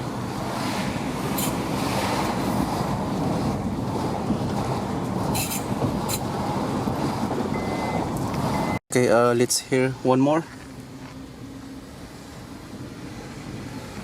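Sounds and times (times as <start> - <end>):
road and tyre noise: 0.0 - 14.0
high-pitched brake scraping: 1.3 - 2.1, 5.3 - 6.3.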